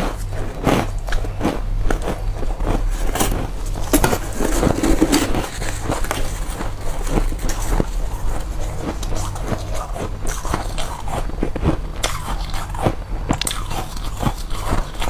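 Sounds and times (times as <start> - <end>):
frost crunching while chewed: 0.0 - 15.0
steady low hum: 0.0 - 15.0.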